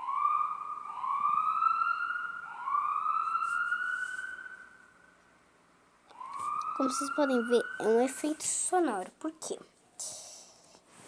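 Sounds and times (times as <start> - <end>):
ambulance siren wailing: 0.0 - 5.1, 6.1 - 8.2.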